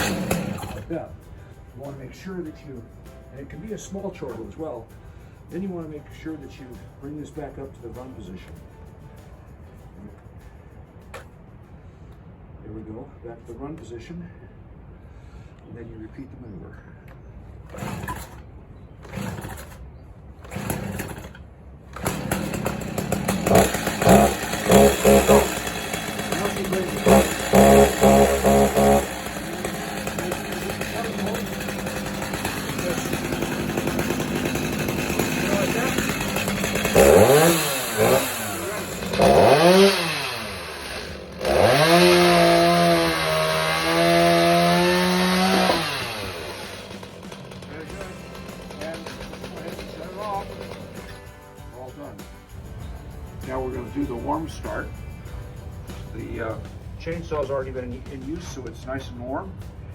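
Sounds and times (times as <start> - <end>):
chainsaw engine running and revving: 0.0 - 1.0, 17.7 - 19.8, 20.4 - 51.5
starter cord pulls: 0.0 - 1.0, 17.7 - 51.4.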